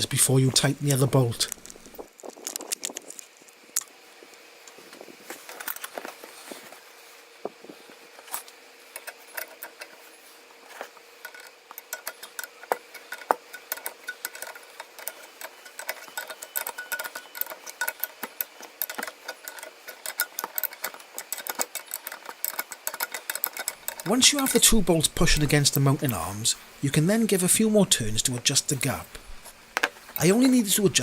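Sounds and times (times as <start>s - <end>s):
faint steady hum: 0.0s - 31.0s
spanner clicking on bolts: 8.2s - 26.3s.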